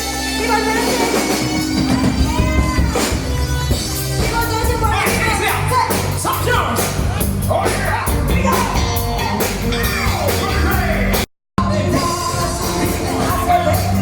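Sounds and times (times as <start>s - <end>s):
rock music with singer: 0.0s - 14.0s.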